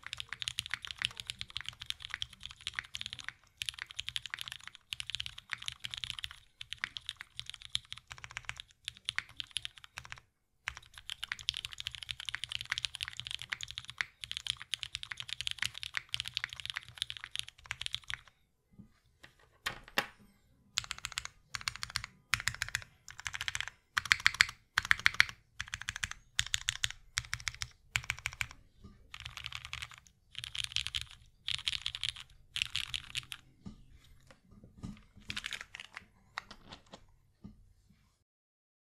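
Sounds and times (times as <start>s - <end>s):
mechanical keyboard typing: 0.0s - 18.3s, 20.8s - 33.4s, 35.2s - 37.0s.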